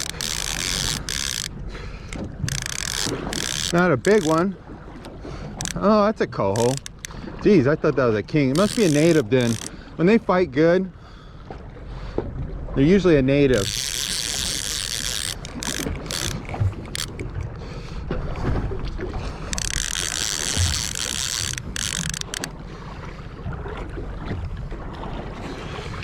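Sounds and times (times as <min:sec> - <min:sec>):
fishing reel ratcheting: 0:00.0 - 0:07.2, 0:08.4 - 0:09.8, 0:13.4 - 0:17.2, 0:19.5 - 0:22.5.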